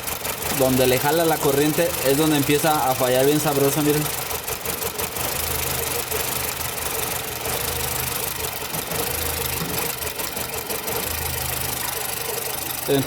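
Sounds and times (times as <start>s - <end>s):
car engine idling rough: 0.0s - 13.0s.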